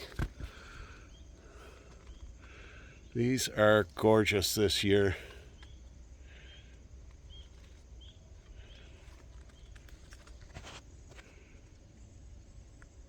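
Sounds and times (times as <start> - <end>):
faint bird chirps: 0.0 - 10.5
soft clicks and rustles: 6.7 - 11.9.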